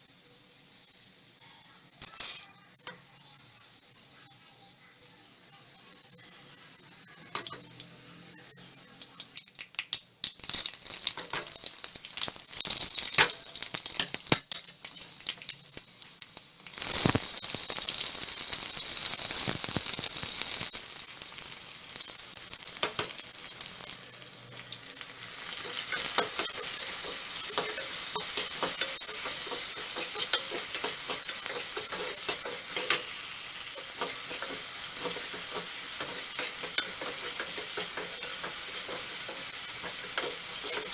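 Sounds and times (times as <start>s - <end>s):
food frying in hot oil: 0.0s - 40.9s
spatula stirring and scraping: 25.5s - 40.9s.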